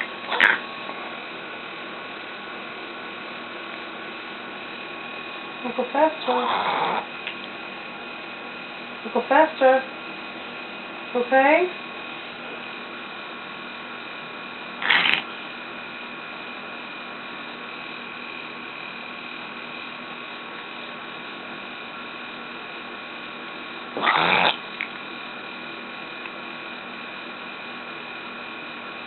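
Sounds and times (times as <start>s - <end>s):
cat coughing: 0.0s - 0.6s, 14.8s - 15.3s, 24.0s - 24.6s
faint background hum: 0.0s - 29.0s.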